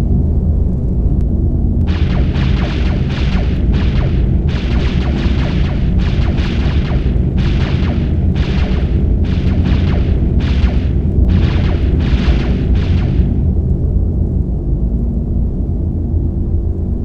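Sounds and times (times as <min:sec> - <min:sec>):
heavy continuous rumble: 0:00.0 - 0:17.0
explosion-like blasts: 0:01.8 - 0:13.7.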